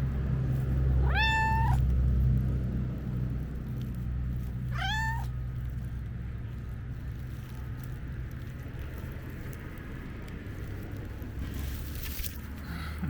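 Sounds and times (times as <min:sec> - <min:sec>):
cat meowing: 0:01.0 - 0:01.8, 0:04.7 - 0:05.4.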